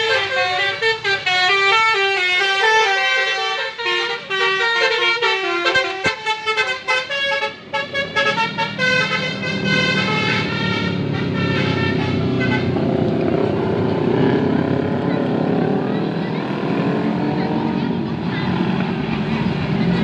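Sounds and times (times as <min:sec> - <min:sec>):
bus musical horn tune: 0:00.0 - 0:12.9
engine and street noise: 0:00.0 - 0:20.0.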